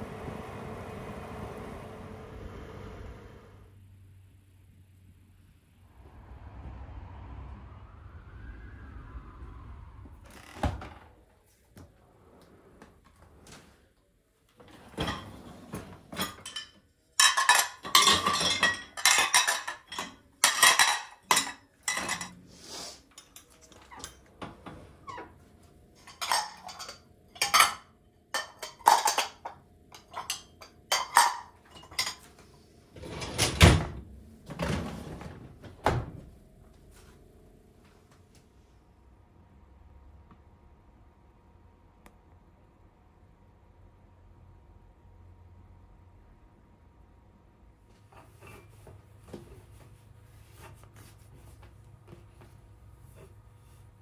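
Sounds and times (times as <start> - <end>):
crockery and cutlery clinking: 14.7 - 22.4, 26.0 - 32.3.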